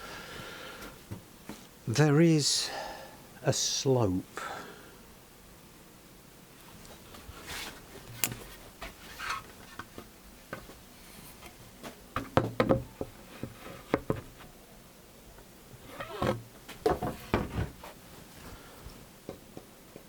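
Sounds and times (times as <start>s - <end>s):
wood knocking against wood: 12.2s - 14.3s, 16.2s - 17.8s.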